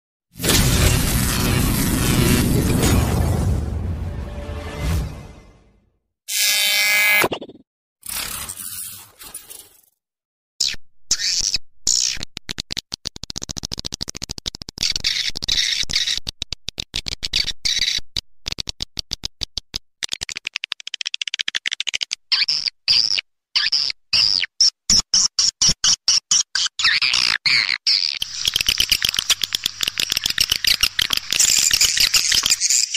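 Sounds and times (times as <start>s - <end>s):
bird calls with chattering clicks: 20.1s - 32.9s.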